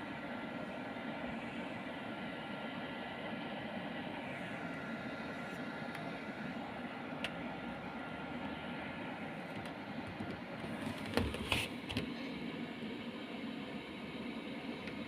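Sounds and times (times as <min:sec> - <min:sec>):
fan heater running: 0:00.0 - 0:15.0.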